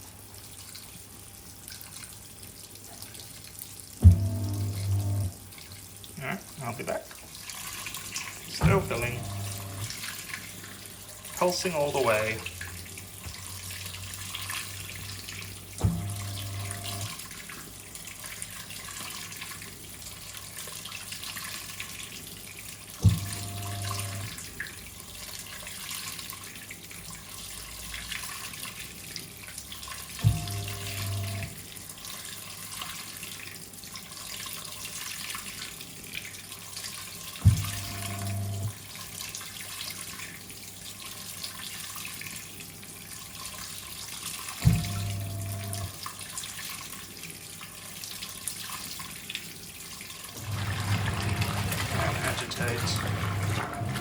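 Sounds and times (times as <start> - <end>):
water running into tub: 0.0 - 54.0
washing machine motor hum: 4.0 - 6.9, 8.1 - 17.4, 23.0 - 24.4, 30.1 - 31.6, 37.4 - 38.9, 44.6 - 46.0, 50.3 - 54.0.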